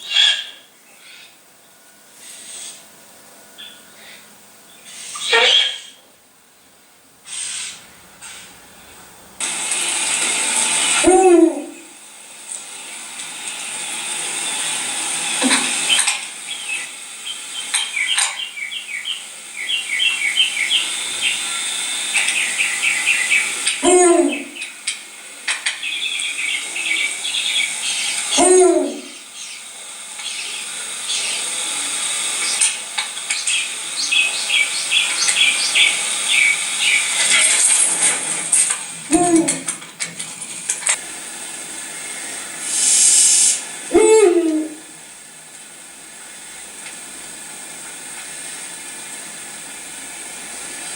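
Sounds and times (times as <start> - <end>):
barn owl chittering clicks: 12.4 - 41.0.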